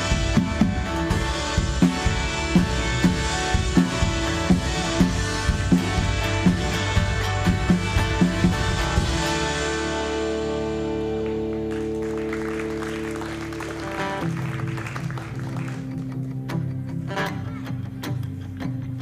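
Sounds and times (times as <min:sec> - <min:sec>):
drum strokes: 0:00.0 - 0:10.7.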